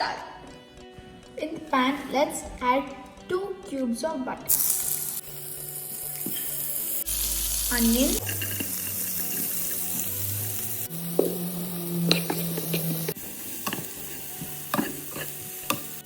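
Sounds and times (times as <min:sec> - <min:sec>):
onion sizzling in a pan: 0:04.5 - 0:16.0
utensil knocking against pan: 0:13.6 - 0:16.0.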